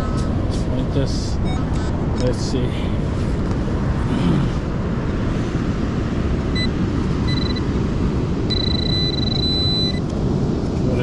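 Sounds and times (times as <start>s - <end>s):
storm surf rumbling: 0.0s - 11.0s
metal detector steady tone: 6.6s - 7.8s, 8.5s - 10.1s
metal detector beeps: 7.3s - 7.7s, 8.5s - 10.0s.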